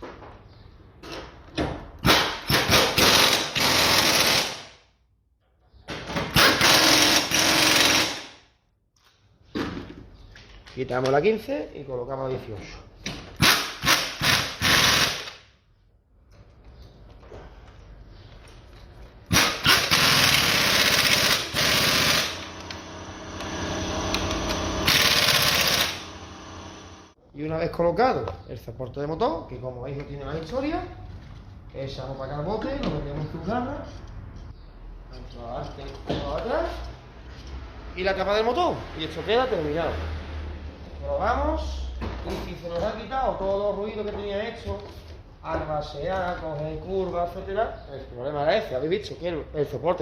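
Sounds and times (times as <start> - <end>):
impact wrench rattling: 6.3 - 8.3, 13.4 - 15.4, 19.3 - 23.0, 24.1 - 26.2
impact wrench hammering: 19.3 - 27.1.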